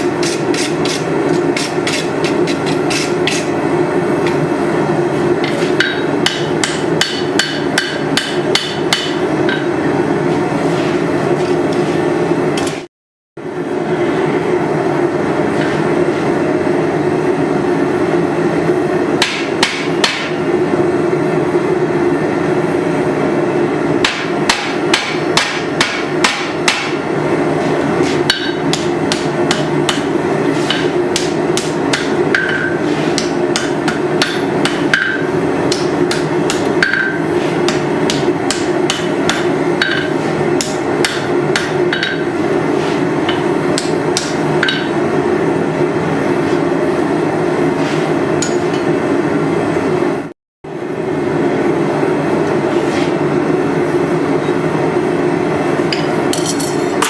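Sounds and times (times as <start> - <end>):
hammer striking hot steel on anvil: 5.4 - 9.8, 19.2 - 20.4, 24.0 - 27.0, 28.2 - 42.4, 43.3 - 45.0, 48.4 - 48.9, 55.9 - 57.0.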